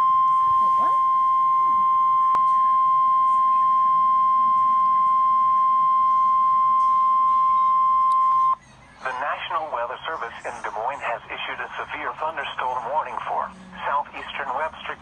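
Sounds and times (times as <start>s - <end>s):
steady high alarm tone: 0.0s - 8.6s.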